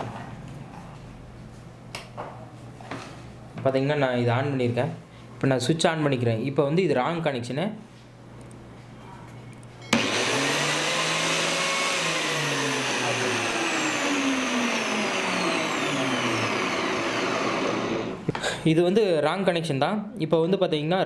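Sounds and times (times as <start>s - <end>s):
electric appliance motor running: 10.0s - 18.3s.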